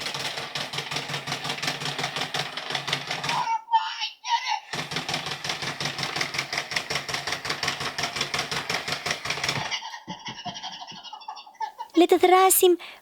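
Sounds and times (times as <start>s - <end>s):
toy motor rattle: 0.0s - 3.5s, 4.7s - 9.9s.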